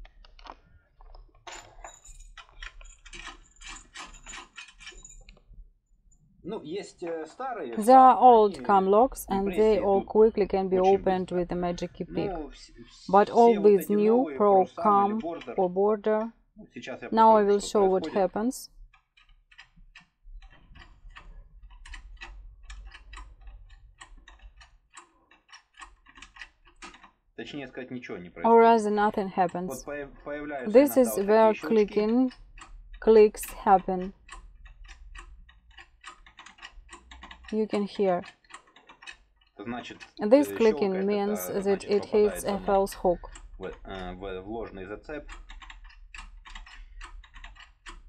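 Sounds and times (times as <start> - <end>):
metal lock-picking tools clicking: 1.5 - 5.4, 18.9 - 27.1
low handling rumble: 42.1 - 45.3.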